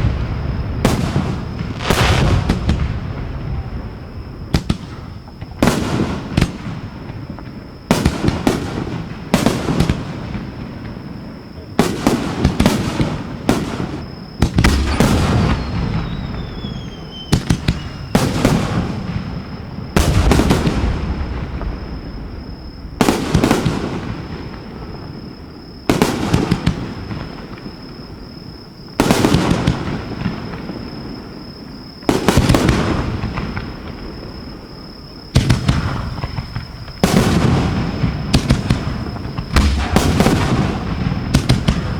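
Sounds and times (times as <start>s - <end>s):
fireworks bangs echoing: 0.0s - 41.9s
falling whistle: 14.7s - 18.4s.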